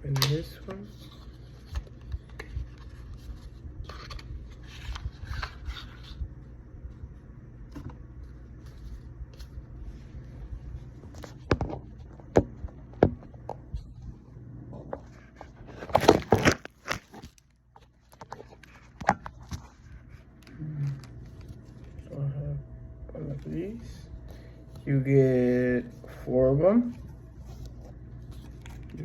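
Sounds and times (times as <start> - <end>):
packaging scraping and rustling: 15.3 - 20.2.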